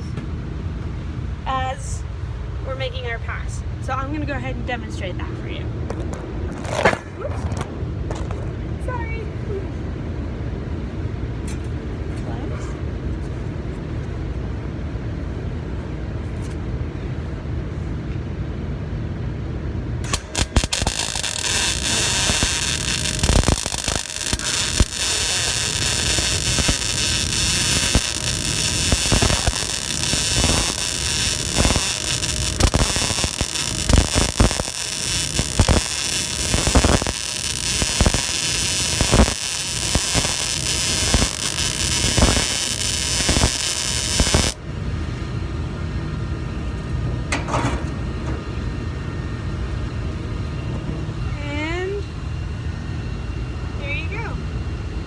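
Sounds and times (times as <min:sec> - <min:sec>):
low steady hum: 0:00.0 - 0:55.0
welding arc crackling and sizzling: 0:05.8 - 0:08.4, 0:20.0 - 0:44.6.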